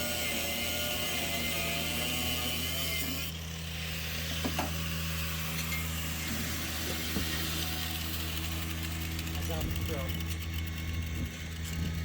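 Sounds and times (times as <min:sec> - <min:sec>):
engine idling: 0:06.1 - 0:12.0.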